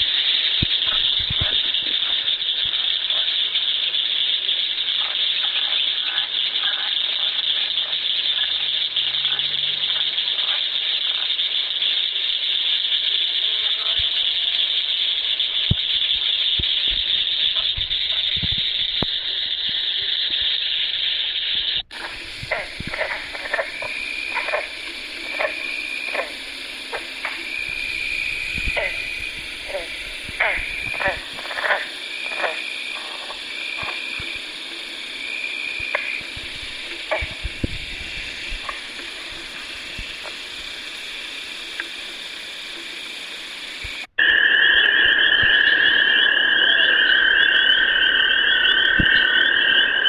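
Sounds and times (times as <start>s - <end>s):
frogs calling: 0.0s - 50.0s
faint clicks: 0.6s - 3.2s, 15.4s - 44.1s.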